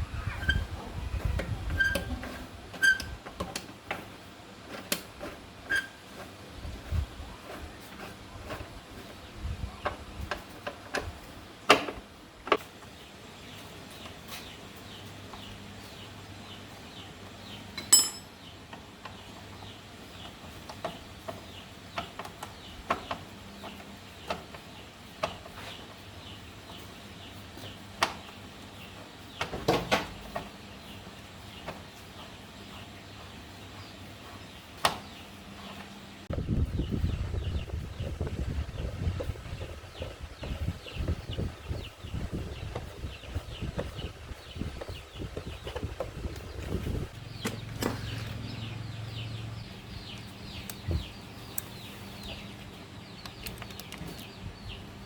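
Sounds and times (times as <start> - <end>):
metal tools clinking and knocking: 17.8 - 18.3
metallic ringing ping: 17.8 - 18.3.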